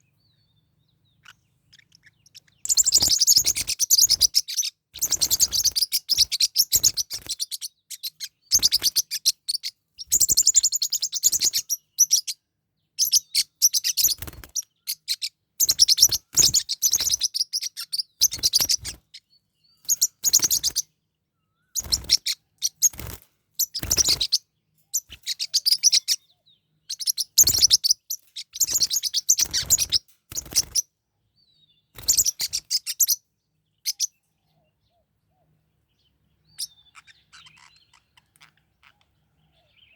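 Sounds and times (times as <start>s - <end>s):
parrotlets chirping: 0.4s - 12.4s, 13.0s - 20.9s, 21.8s - 30.9s, 32.0s - 33.2s, 33.8s - 34.1s, 36.5s - 39.9s.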